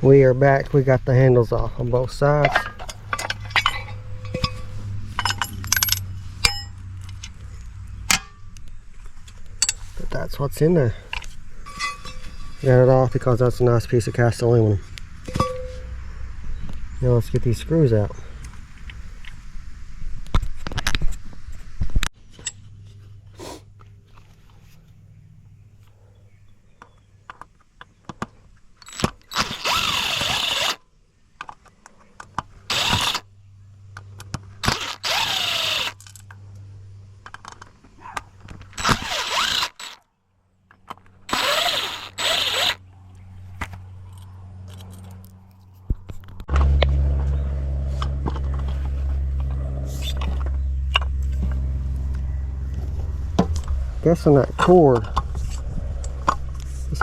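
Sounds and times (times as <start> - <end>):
steady low hum: 0.0 - 20.3, 32.5 - 57.0
power drill motor whine: 29.3 - 30.8, 32.7 - 33.2, 34.6 - 36.0, 38.8 - 40.0, 41.3 - 42.8.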